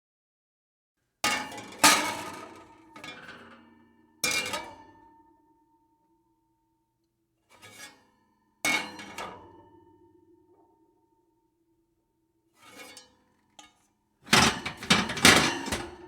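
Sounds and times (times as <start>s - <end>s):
metal oven pans clanging: 14.3s - 16.0s
pan scraping: 14.3s - 16.0s.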